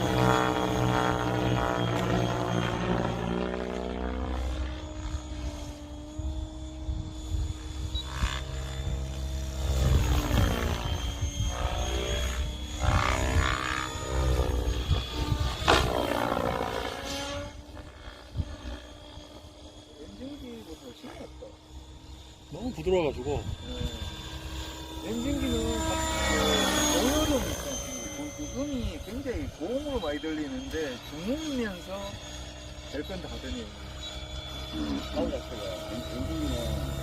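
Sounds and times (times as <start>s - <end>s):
rc helicopter rotor hum: 0.0s - 37.0s.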